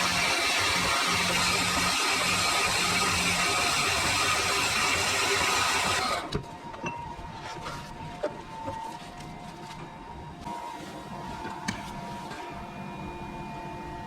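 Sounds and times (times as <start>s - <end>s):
metal-cutting machine whining: 0.0s - 6.4s.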